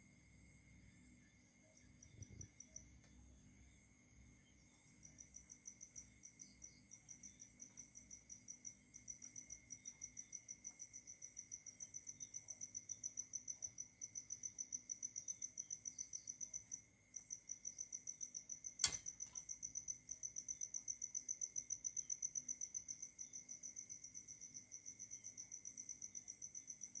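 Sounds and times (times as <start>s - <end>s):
insect chirping: 0.1s - 27.0s
sharp click: 18.8s - 19.4s.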